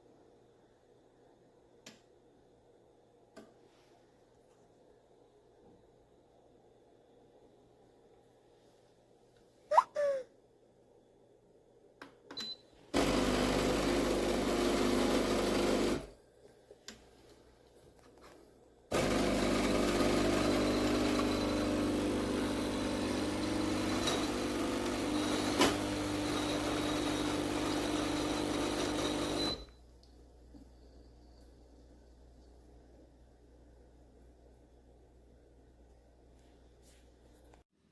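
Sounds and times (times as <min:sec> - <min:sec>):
espresso machine pump buzzing: 0:13.0 - 0:16.0, 0:18.9 - 0:29.7.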